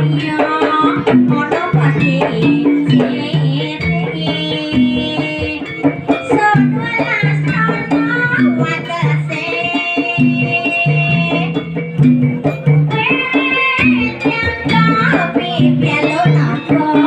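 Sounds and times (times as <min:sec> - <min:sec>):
drumming: 0:00.0 - 0:17.0
wavering held melody: 0:00.0 - 0:17.0.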